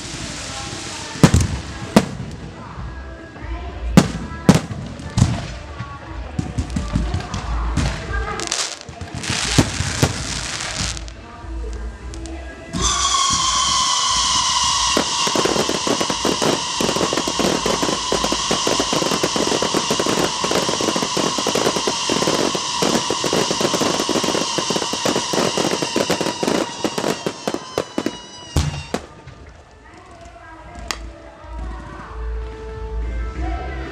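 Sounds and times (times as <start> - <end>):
fireworks crackling and popping: 0.0 - 32.6
firework whistles: 12.7 - 29.4.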